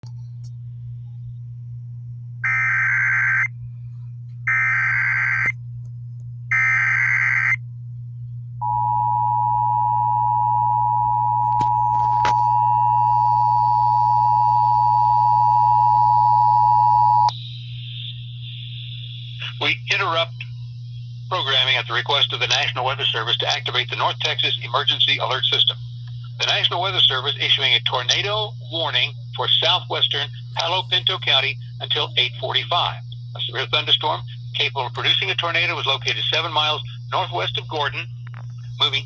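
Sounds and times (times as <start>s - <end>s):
low steady hum: 0.0s - 39.0s
buzzy digital data bursts: 17.3s - 39.0s.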